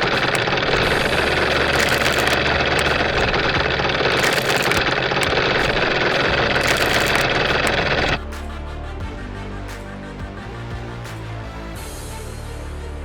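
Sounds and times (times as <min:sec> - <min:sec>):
engine running at high power: 0:00.0 - 0:08.2.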